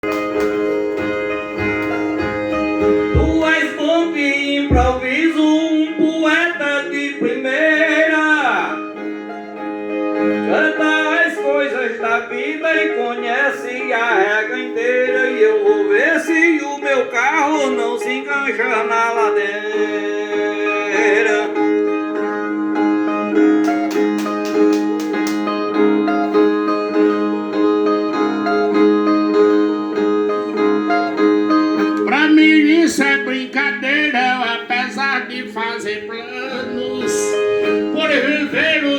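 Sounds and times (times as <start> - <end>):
low thumps: 0.0 - 3.5, 4.7 - 5.2
plucked viola: 0.0 - 6.4, 7.2 - 18.2, 19.0 - 32.6, 36.4 - 38.9
person singing: 1.6 - 9.1, 10.3 - 22.4, 31.8 - 38.9.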